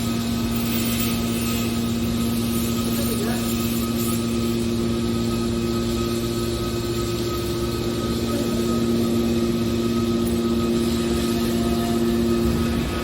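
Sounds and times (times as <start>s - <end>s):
baler mechanical hum: 0.0s - 13.0s
noisy wash: 6.9s - 13.0s.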